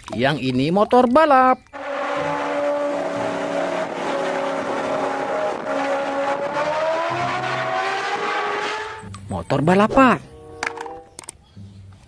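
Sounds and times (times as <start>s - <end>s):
racing engine drone: 1.7s - 9.2s.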